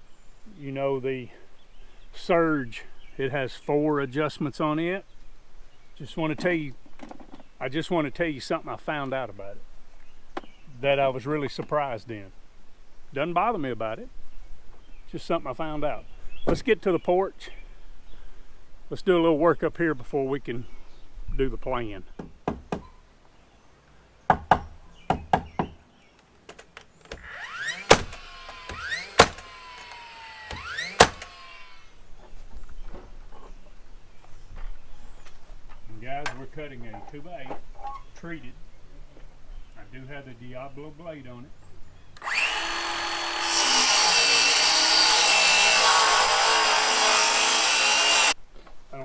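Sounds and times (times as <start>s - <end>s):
knocks: 24.3s - 25.8s, 27.9s - 29.5s
nailer motor whine and crack: 27.1s - 31.9s, 42.2s - 48.4s.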